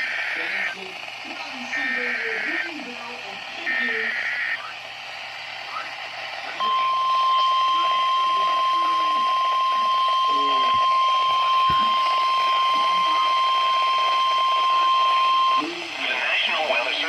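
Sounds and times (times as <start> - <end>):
loud steady warning alarm tone: 0.0 - 17.0.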